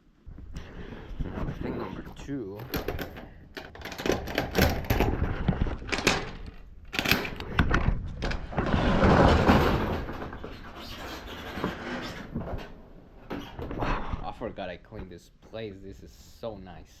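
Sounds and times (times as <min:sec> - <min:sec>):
rustling scrape: 0:08.4 - 0:12.8.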